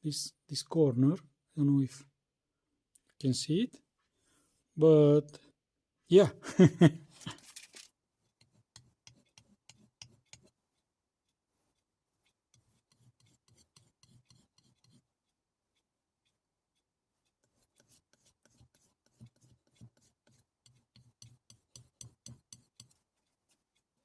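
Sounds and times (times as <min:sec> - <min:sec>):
knife scraping on a strop: 0:07.2 - 0:10.6, 0:11.2 - 0:15.4, 0:17.2 - 0:23.9.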